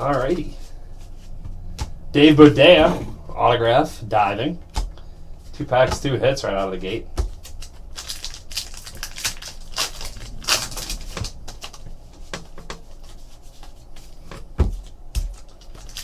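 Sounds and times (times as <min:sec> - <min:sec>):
wrapper crinkling and tearing: 0:07.4 - 0:11.9, 0:15.4 - 0:16.0.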